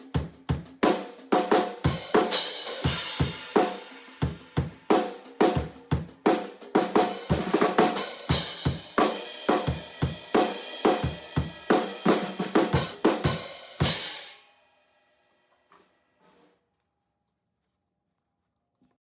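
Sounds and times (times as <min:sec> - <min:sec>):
drum kit beat: 0:00.0 - 0:14.4
cymbals ringing: 0:00.8 - 0:14.5.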